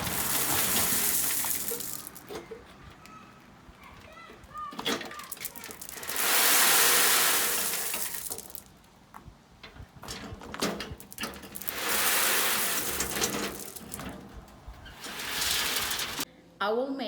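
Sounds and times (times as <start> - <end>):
gravel pouring off shovel: 0.0 - 2.5, 5.1 - 8.7, 11.0 - 14.2, 14.9 - 16.3
shovel scraping into gravel: 0.0 - 2.5, 5.1 - 8.6, 11.1 - 14.2, 14.9 - 16.2
stones clicking: 0.0 - 3.2, 4.8 - 9.2, 10.9 - 14.2.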